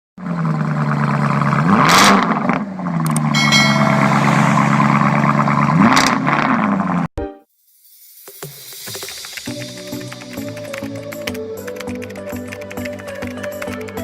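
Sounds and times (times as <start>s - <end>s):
car engine idling and revving: 0.2s - 3.3s, 4.2s - 7.1s.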